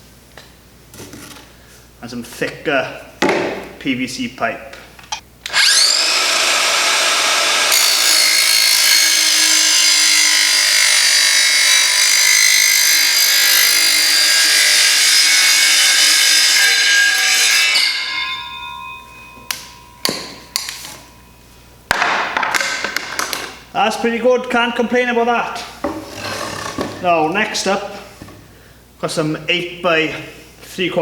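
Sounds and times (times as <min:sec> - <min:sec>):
saw winding down whine: 0:05.5 - 0:19.6
circular saw cutting pipe: 0:05.5 - 0:21.2.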